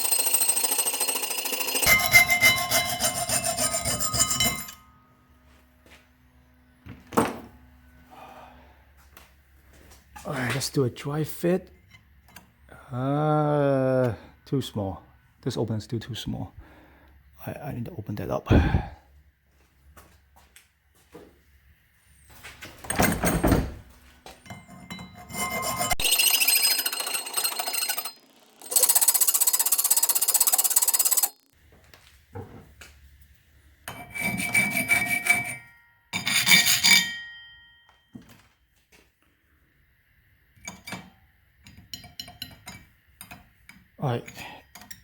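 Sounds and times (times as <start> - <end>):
metal tool grinding: 0.0 - 4.9, 24.5 - 31.6, 33.9 - 37.4.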